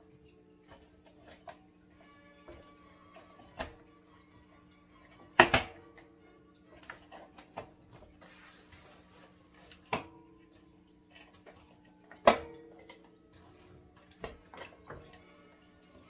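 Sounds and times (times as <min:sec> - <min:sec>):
plastic parts knocking and clicking: 0:05.3 - 0:06.0.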